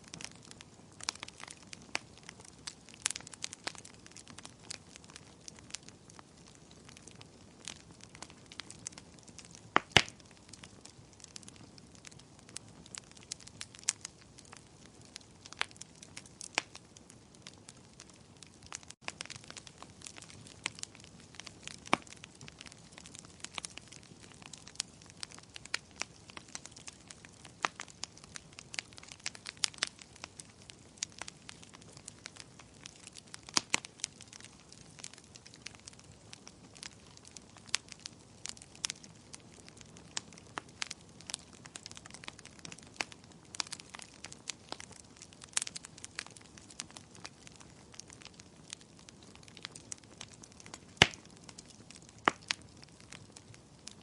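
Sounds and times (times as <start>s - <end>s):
faint fire hiss: 0.0s - 54.0s
fire crackling and popping: 0.0s - 54.0s.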